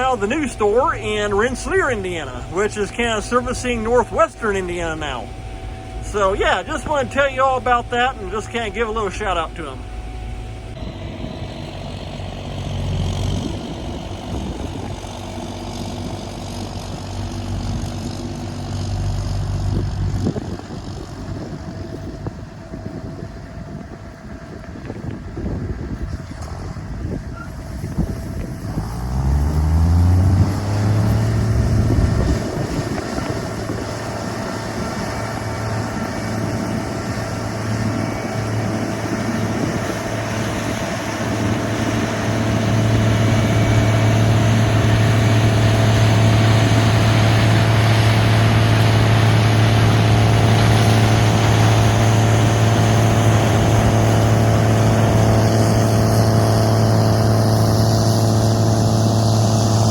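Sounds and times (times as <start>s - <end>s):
harvester engine revving: 0.0s - 59.9s.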